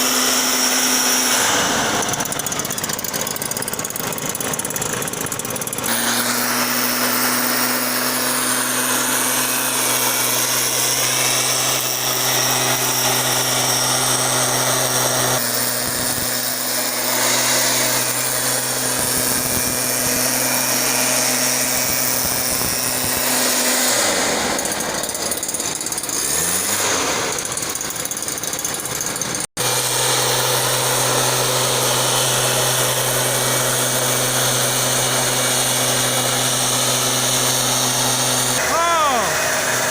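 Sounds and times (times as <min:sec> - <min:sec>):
small engine running: 0:00.0 - 0:39.9
spray hissing rush: 0:29.6 - 0:39.9.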